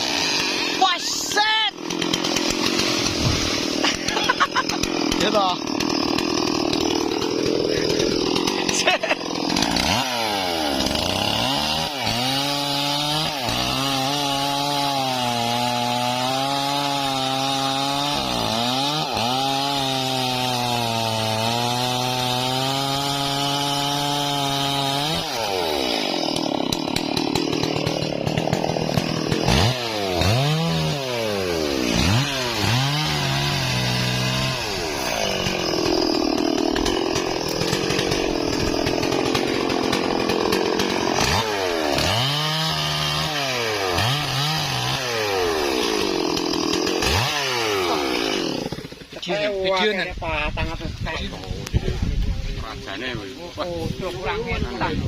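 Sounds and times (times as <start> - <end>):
chainsaw cutting wood: 0.0 - 49.9.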